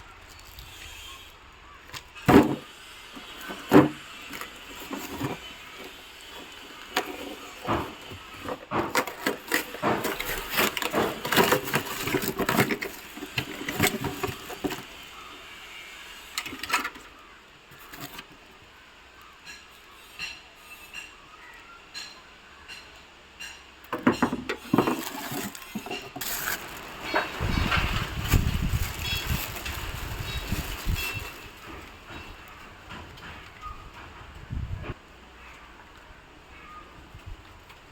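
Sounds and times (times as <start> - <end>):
packaging crackling and rustling: 1.8 - 15.2, 24.6 - 32.0.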